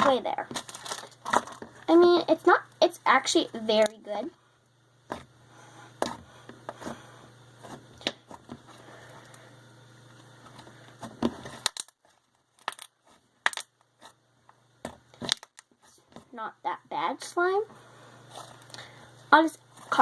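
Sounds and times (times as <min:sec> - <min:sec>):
slime clicks and crackles: 0:11.6 - 0:12.0, 0:12.6 - 0:13.7.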